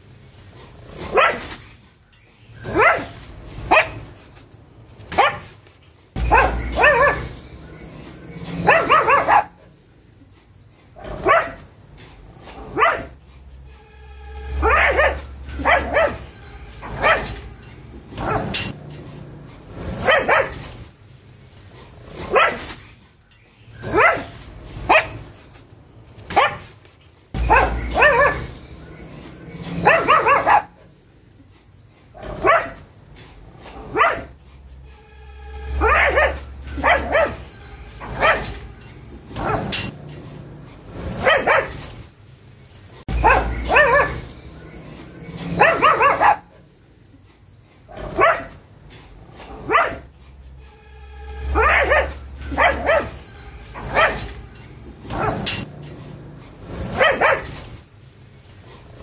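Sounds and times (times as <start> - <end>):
dog barking: 1.0 - 1.6, 2.6 - 4.1, 5.1 - 5.5, 6.2 - 7.5, 8.4 - 9.7, 11.0 - 11.7, 12.5 - 13.2, 14.5 - 17.4, 18.1 - 18.7, 19.9 - 20.7, 22.2 - 22.7, 23.8 - 25.3, 26.3 - 26.7, 27.4 - 29.0, 29.7 - 30.8, 32.2 - 32.9, 33.7 - 34.4, 35.7 - 38.6, 39.3 - 39.9, 41.1 - 41.8, 43.1 - 44.7, 45.4 - 46.6, 47.9 - 48.6, 49.5 - 50.1, 51.5 - 53.2, 53.8 - 54.4, 55.1 - 55.7, 56.9 - 57.6.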